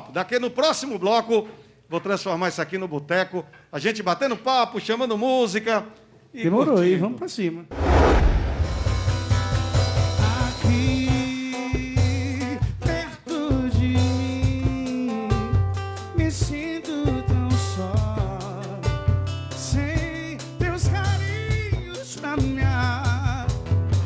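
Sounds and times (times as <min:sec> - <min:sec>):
band playing with drums and bass: 0:08.8 - 0:24.0
person singing: 0:10.2 - 0:15.6, 0:16.2 - 0:18.9.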